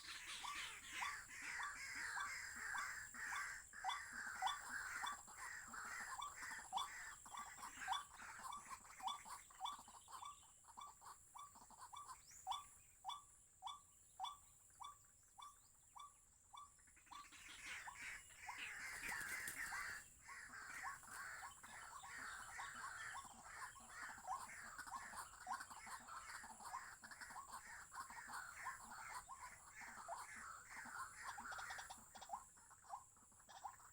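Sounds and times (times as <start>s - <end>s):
birds chirping: 0.0s - 33.9s.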